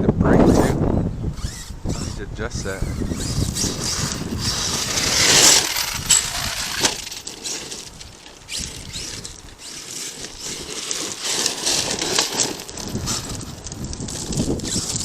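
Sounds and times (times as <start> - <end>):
electric motor whining: 0.4 - 15.0
loose stones scattering: 3.7 - 15.0.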